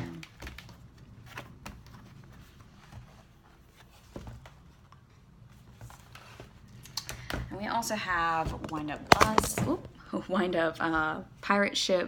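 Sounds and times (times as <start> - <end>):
book clicks and rustles: 0.1 - 7.4.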